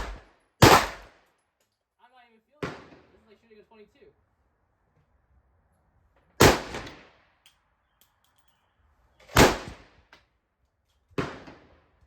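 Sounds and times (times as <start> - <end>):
pistol shots with echo: 0.0 - 1.1, 6.4 - 7.2, 9.3 - 9.9.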